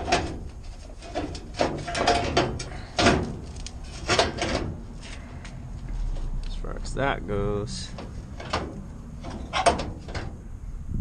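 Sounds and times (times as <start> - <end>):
sheet metal scraping: 0.0 - 5.2
sheet metal clunks: 1.1 - 3.4, 8.0 - 10.4.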